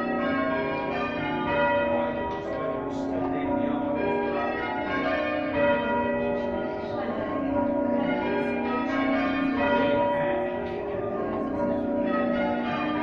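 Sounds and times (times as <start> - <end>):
church bells ringing: 0.0 - 13.0.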